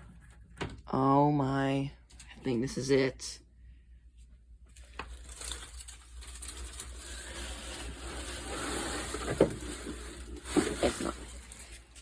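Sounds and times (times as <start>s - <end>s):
items rustling and crinkling: 4.2s - 12.0s.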